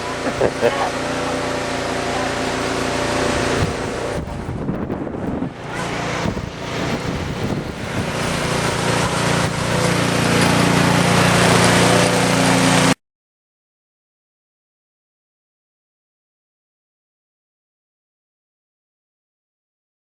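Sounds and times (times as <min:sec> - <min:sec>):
snow blower engine running: 0:00.0 - 0:13.0.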